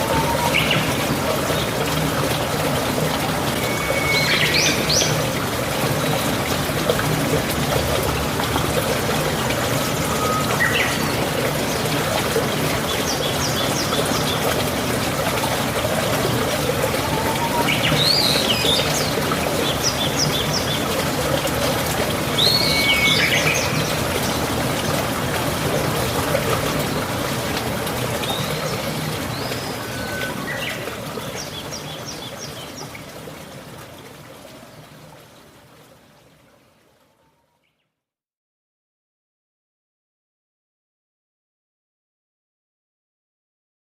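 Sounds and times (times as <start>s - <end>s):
birds chirping and trilling: 0.0s - 1.0s, 3.6s - 5.3s, 16.8s - 21.0s, 22.4s - 24.4s
water trickling: 0.0s - 37.8s.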